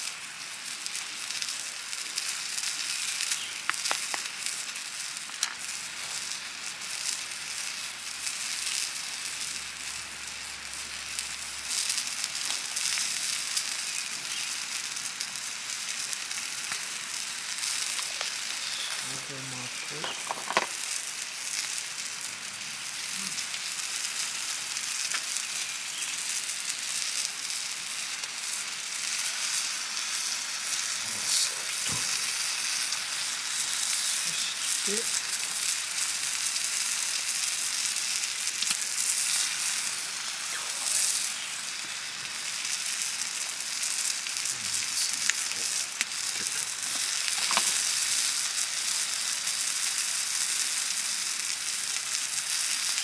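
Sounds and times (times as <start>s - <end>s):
food sizzling on a griddle: 0.0s - 53.0s
small pops: 3.6s - 4.3s, 19.9s - 21.0s, 25.0s - 25.4s, 38.5s - 42.4s, 44.4s - 48.0s.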